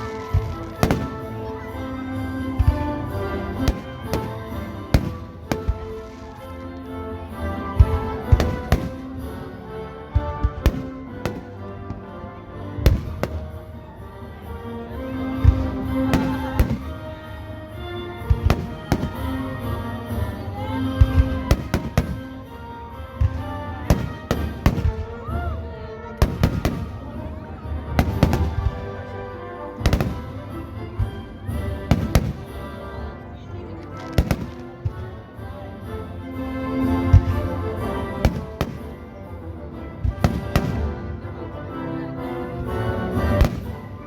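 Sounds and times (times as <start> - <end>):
fireworks bangs: 0.0 - 1.6, 2.6 - 6.6, 15.4 - 17.0, 23.2 - 25.4, 26.2 - 27.2, 27.9 - 28.8
music playing: 0.0 - 44.0.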